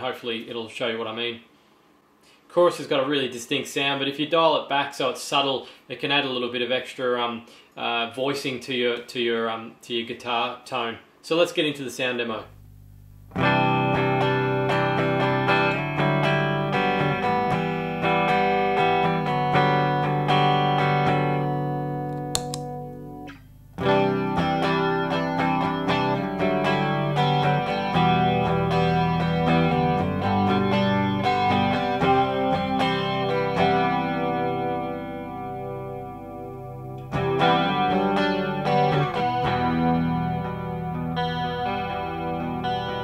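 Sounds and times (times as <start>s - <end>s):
electric guitar with chorus effect: 12.3s - 43.0s.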